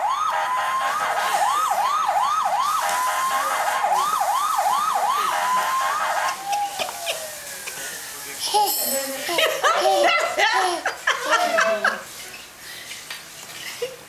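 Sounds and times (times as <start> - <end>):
toy car electronic siren: 0.0 - 7.8.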